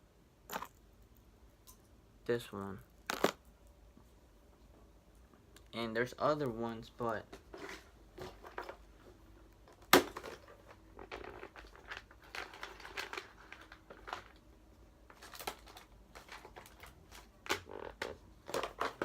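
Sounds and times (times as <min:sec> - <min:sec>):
packaging rustling: 0:10.1 - 0:14.4, 0:15.1 - 0:19.0.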